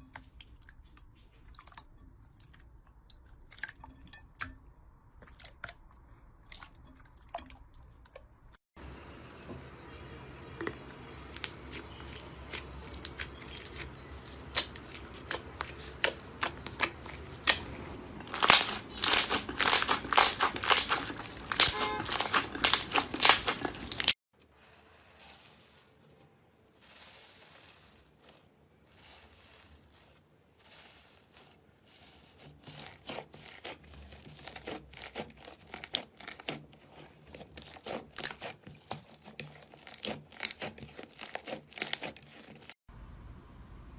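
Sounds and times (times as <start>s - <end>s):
slime squeezed crackling: 11.1s - 24.2s, 26.9s - 42.8s.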